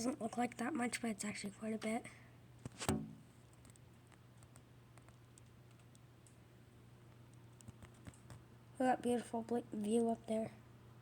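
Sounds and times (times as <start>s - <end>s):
low steady hum: 0.0s - 11.0s
faint clicks and taps: 2.6s - 6.4s, 7.0s - 8.5s
loud knock: 2.8s - 3.2s.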